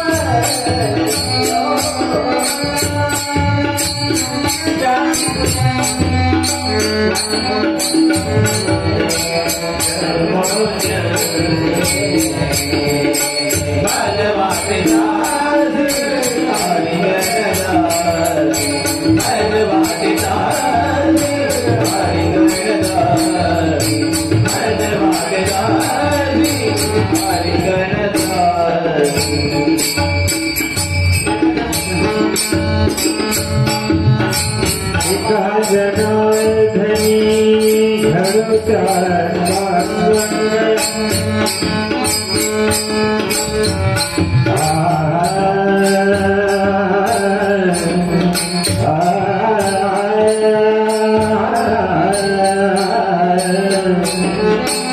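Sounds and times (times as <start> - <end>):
jingling metallic percussion: 0.0 - 54.9
devotional singing: 8.6 - 29.4, 44.4 - 54.6.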